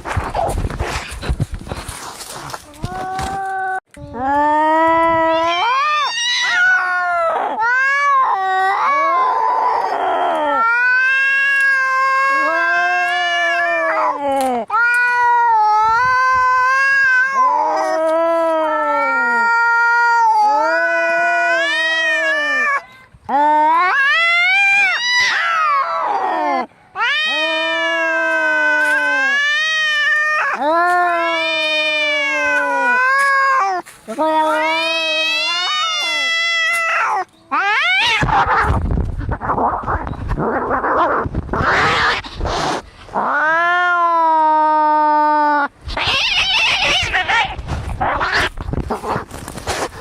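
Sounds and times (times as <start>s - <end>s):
cats yowling: 2.8s - 49.4s
cat hissing: 38.0s - 43.4s, 45.8s - 50.0s.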